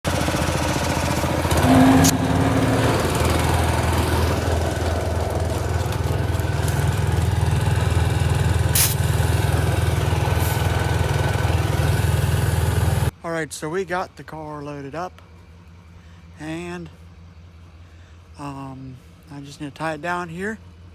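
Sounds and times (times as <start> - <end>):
vehicle engine idling: 0.1 - 13.2.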